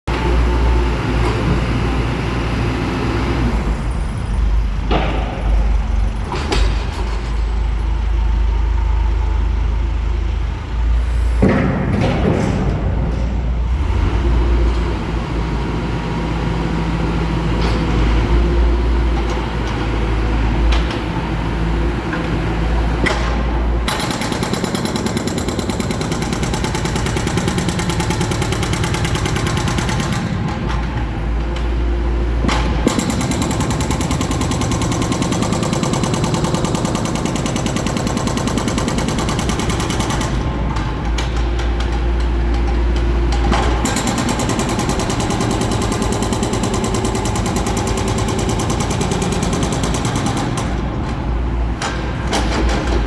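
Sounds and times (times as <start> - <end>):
diesel engine under load: 0.1 - 53.0
hydraulic breaker hammering: 23.1 - 31.2, 32.4 - 53.0.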